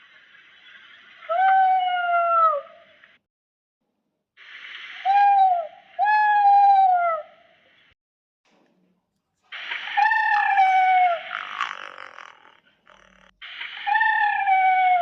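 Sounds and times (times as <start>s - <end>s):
creature cries: 10.0s - 13.3s.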